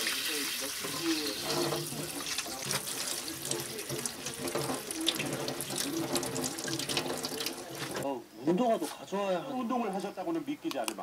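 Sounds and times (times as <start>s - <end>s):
tap water running into sink: 0.0s - 8.0s.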